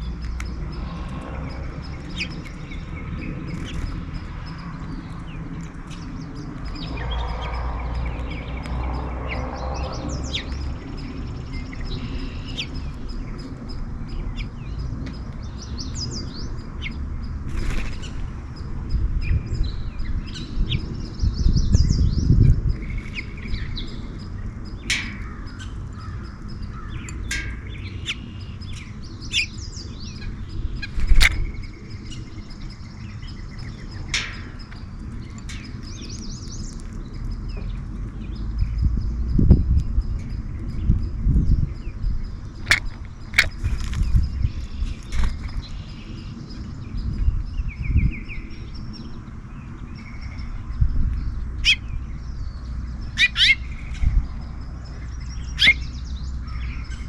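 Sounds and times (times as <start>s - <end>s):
low rumble: 0.0s - 24.8s
songbirds chirping: 0.0s - 57.0s
sharp clicks: 42.6s - 43.6s.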